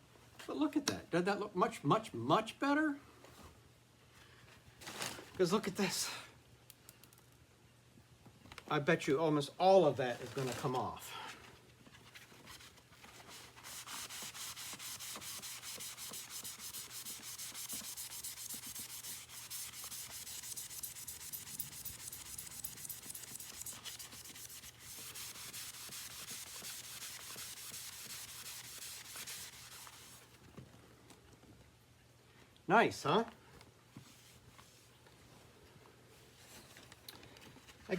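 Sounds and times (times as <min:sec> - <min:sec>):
rapid scrubbing strokes: 0:13.2 - 0:30.3.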